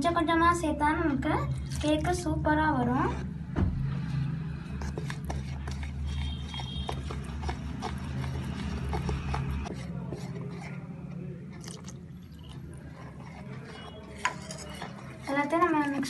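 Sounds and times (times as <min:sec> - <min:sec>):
batter squelching in bowl: 0:04.0 - 0:16.0
utensil scraping bowl: 0:04.1 - 0:16.0.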